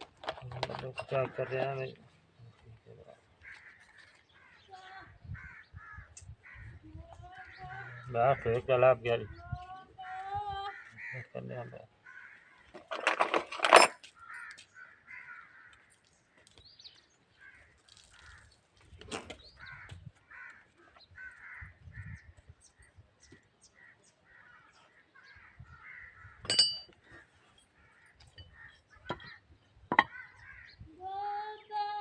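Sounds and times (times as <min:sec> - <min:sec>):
crows cawing: 0:03.4 - 0:08.6, 0:10.7 - 0:13.0, 0:14.1 - 0:16.0, 0:17.4 - 0:18.6, 0:19.6 - 0:22.3, 0:23.8 - 0:30.8.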